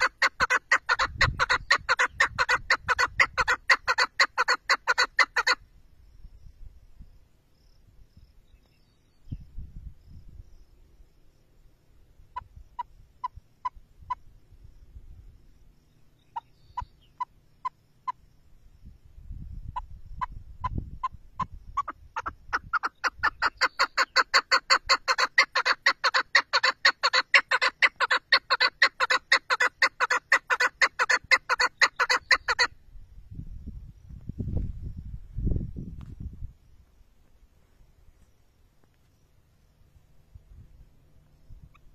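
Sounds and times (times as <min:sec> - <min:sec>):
partridge calling: 0:00.0 - 0:05.6, 0:12.3 - 0:14.3, 0:15.9 - 0:18.2, 0:19.7 - 0:32.8, 0:41.5 - 0:41.9.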